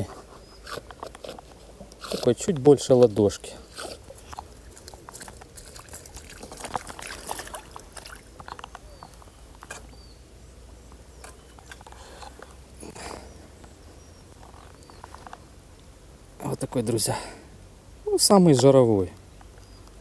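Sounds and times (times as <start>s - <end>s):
handling crackling and rustling: 0.0s - 10.0s.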